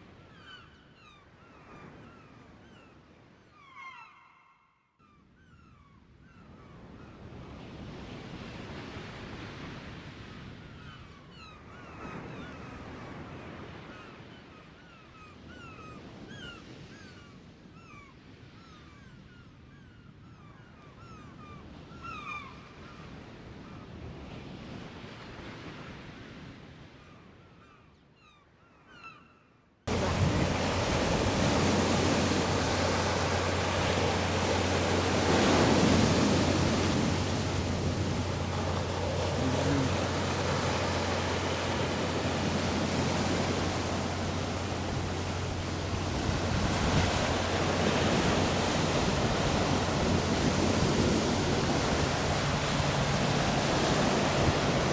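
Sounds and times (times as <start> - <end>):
birds calling: 27.6 - 54.9
sea waves washing ashore: 29.9 - 54.9.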